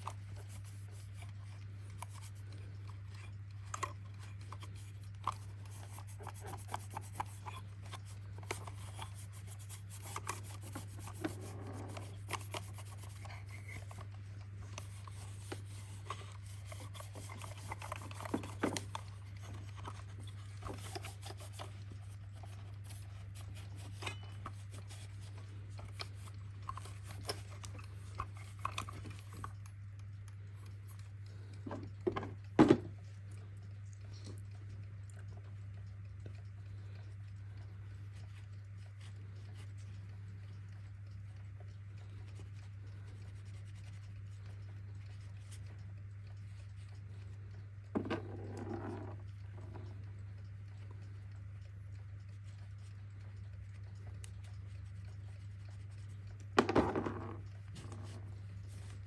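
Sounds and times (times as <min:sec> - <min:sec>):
rubbing and scraping on clock: 0:00.0 - 0:29.6, 0:34.6 - 0:59.0
alarm clock mechanism clicking: 0:00.0 - 0:31.6
steady low hum: 0:00.0 - 0:59.0.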